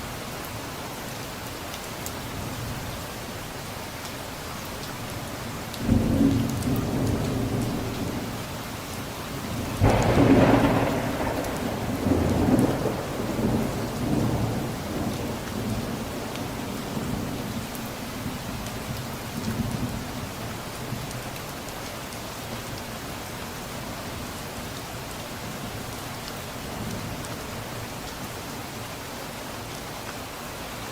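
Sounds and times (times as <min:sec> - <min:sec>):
steady rain: 0:00.0 - 0:30.9
thunder cracking and rumbling: 0:09.5 - 0:17.4.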